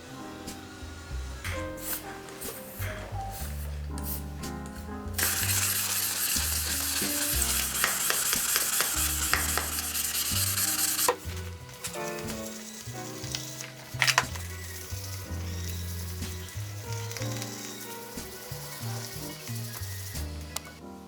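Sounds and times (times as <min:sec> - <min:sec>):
background music with bass: 0:00.0 - 0:21.0
abrasive polishing hiss on metal: 0:00.1 - 0:04.3, 0:05.2 - 0:20.6.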